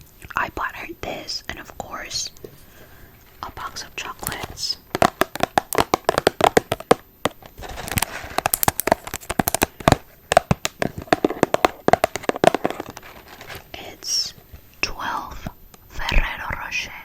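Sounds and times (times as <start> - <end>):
crackling packaging clicks: 4.2 - 13.7.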